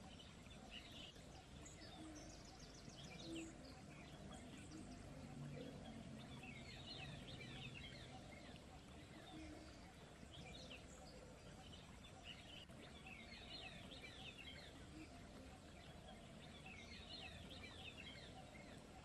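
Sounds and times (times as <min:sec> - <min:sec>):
small birds chirping and trilling: 0:00.0 - 0:19.0.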